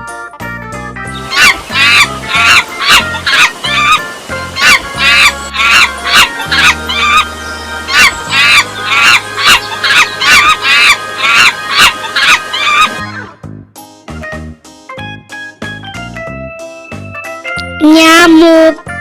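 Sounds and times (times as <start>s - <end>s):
background music: 0.0s - 19.0s
large bird honking: 1.2s - 13.2s.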